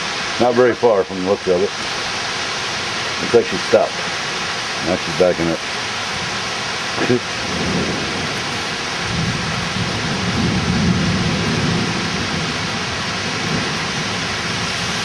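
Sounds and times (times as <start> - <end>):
heavy rain pouring: 0.0 - 15.0
thunder rumble: 7.2 - 15.0.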